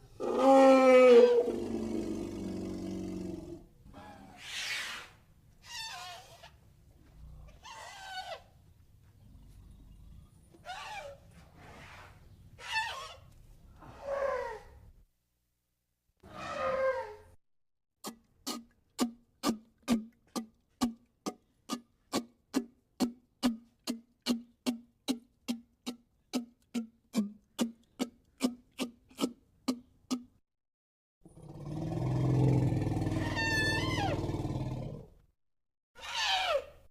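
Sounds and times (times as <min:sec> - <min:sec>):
dragon roar: 0:31.4 - 0:35.1.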